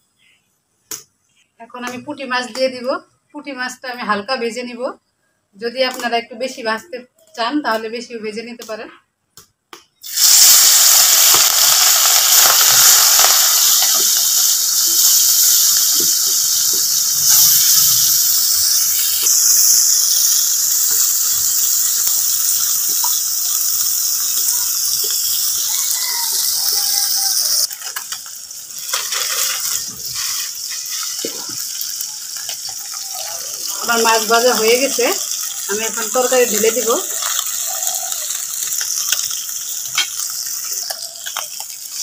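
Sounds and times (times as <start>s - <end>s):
fish frying in hot oil: 10.0s - 42.0s.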